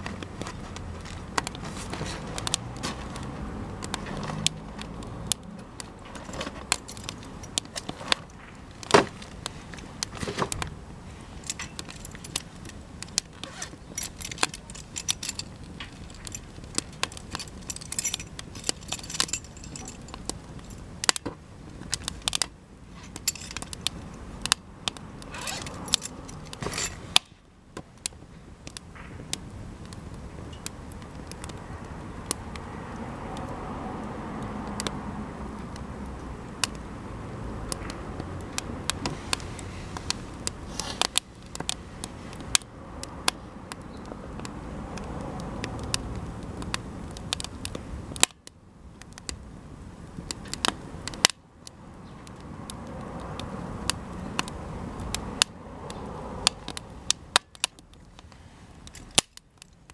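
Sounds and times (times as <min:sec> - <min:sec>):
rush of flame: 0:00.0 - 0:48.3
campfire popping and crackling: 0:00.0 - 0:59.9.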